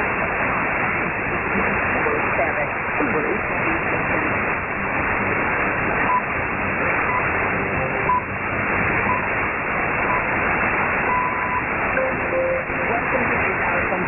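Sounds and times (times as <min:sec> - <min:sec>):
shortwave radio noise: 0:00.0 - 0:14.0
radio time signal pips: 0:04.8 - 0:13.3.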